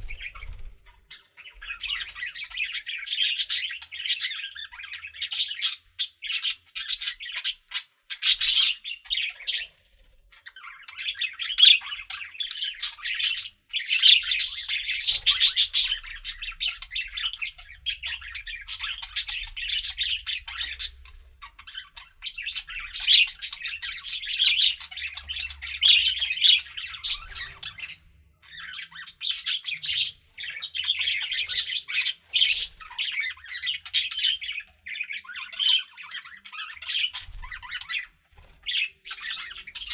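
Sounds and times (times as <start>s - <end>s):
budgerigars chirping and squawking: 0.0s - 39.9s.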